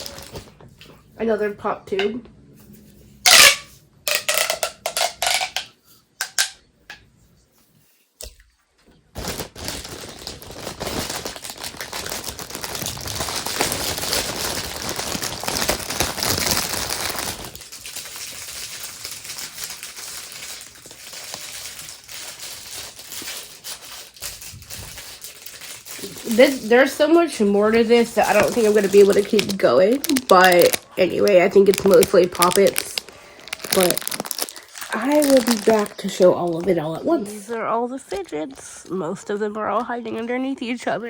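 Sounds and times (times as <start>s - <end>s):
plastic crackling: 0.0s - 0.6s, 3.3s - 6.6s, 9.0s - 38.9s
plastic toy clicks: 3.3s - 6.6s.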